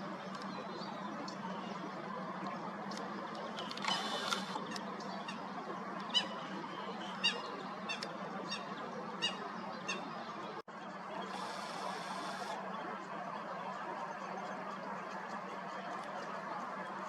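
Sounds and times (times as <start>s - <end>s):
steady outdoor hiss: 0.0s - 17.0s
waterbird high-pitched calls: 6.1s - 10.1s.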